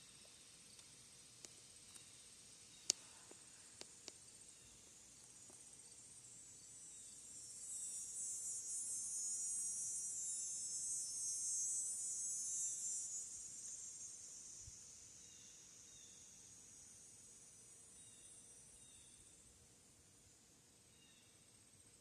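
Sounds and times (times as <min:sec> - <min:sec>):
high-pitched insect buzz: 0:05.8 - 0:19.2.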